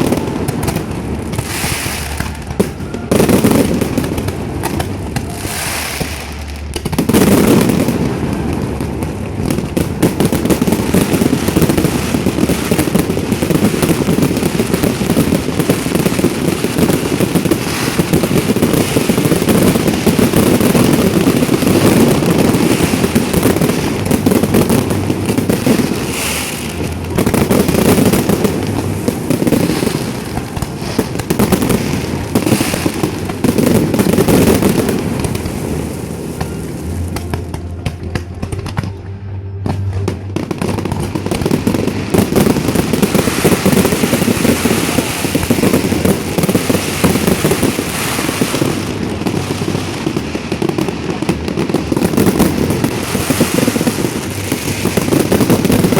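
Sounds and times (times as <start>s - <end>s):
fireworks bangs and crackles: 0.0s - 55.9s.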